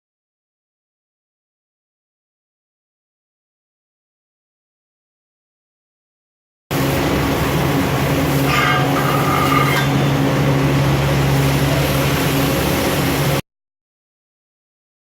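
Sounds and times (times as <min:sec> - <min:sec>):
low shop hum: 0:06.7 - 0:13.4
welding arc sizzling: 0:06.7 - 0:13.4.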